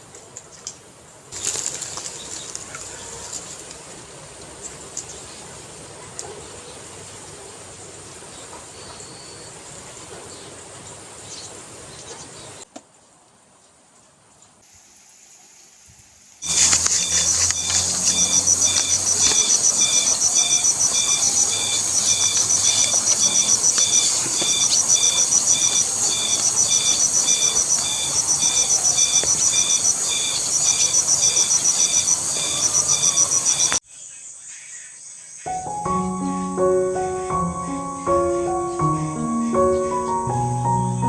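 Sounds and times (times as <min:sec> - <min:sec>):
steady hiss: 0:00.0 - 0:41.0
insect chirping: 0:00.8 - 0:05.9, 0:14.6 - 0:41.0.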